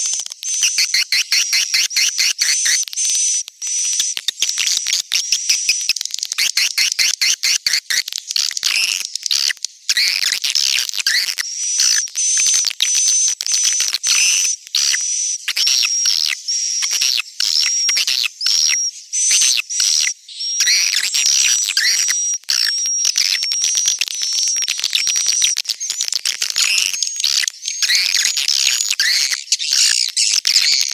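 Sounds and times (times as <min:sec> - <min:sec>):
swiftlet clicking chirps and twittering: 0:00.1 - 0:30.9.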